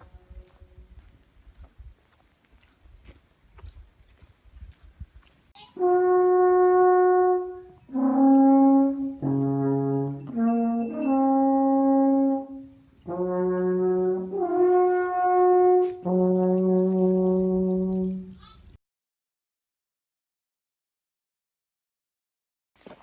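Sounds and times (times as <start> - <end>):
alphorn playing slow melody: 5.9 - 18.3.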